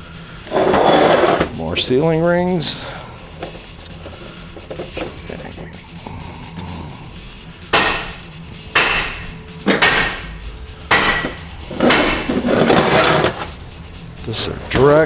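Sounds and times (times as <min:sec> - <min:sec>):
hammer striking metal: 0:04.7 - 0:06.1, 0:07.6 - 0:15.0.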